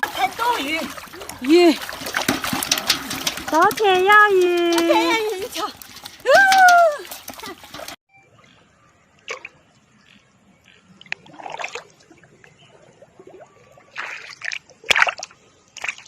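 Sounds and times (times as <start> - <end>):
water trickling: 0.0 - 8.0
water splashing and sloshing: 0.0 - 9.9, 10.9 - 16.0.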